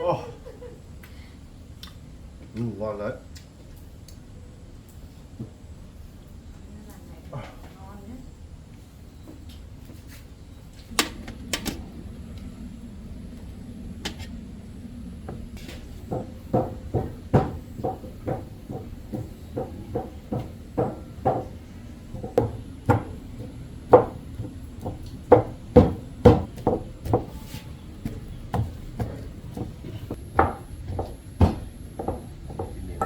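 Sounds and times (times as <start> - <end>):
hollow knocks of pounding: 15.2 - 33.0.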